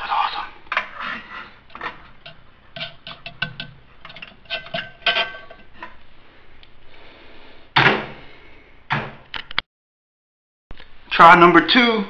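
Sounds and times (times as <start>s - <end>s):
hard objects clinking together: 1.6s - 5.9s.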